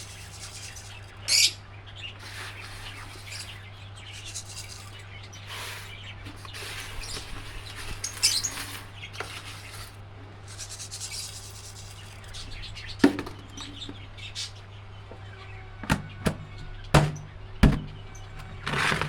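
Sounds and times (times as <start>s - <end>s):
parrots chirping and chattering: 0.0s - 19.0s
scratchy rustling: 2.2s - 14.5s, 18.4s - 19.0s.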